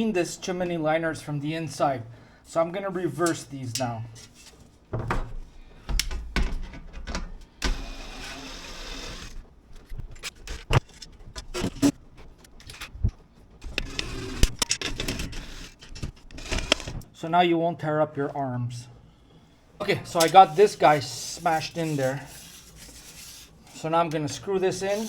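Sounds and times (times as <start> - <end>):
drill driver running: 7.6 - 9.4, 13.6 - 15.7
metal parts clicking and knocking: 13.6 - 17.0.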